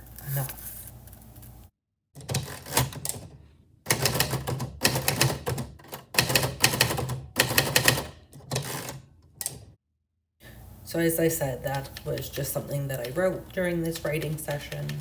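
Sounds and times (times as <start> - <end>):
typewriter keys clacking: 2.2 - 3.3, 3.9 - 9.7, 11.7 - 15.0.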